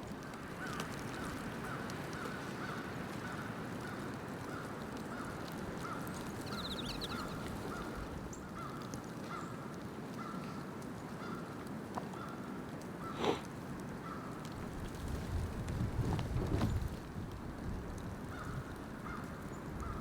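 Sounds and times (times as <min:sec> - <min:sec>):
wind and snow hiss: 0:00.0 - 0:20.0
high bird trill: 0:06.4 - 0:07.9.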